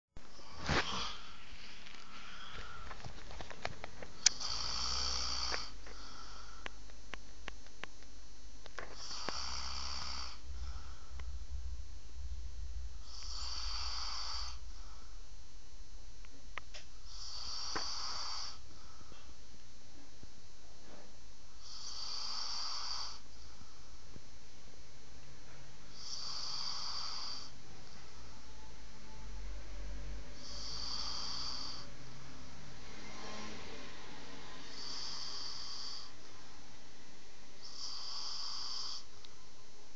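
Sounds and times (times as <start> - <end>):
person snoring: 0.4 - 1.4, 4.2 - 6.7, 8.8 - 11.3, 13.0 - 15.1, 17.0 - 18.7, 21.6 - 23.3, 25.9 - 27.6, 30.4 - 31.9, 34.6 - 36.2, 37.6 - 39.1.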